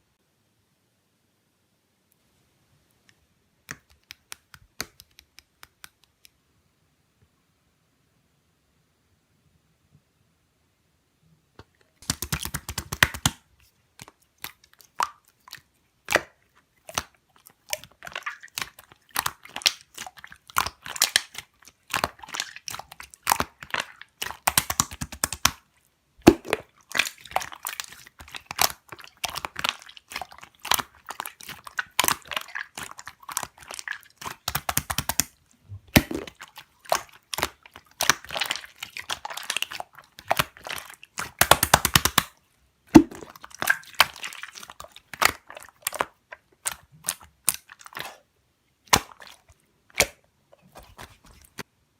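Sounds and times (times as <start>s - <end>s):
slime squished crackling: 14.0s - 51.6s.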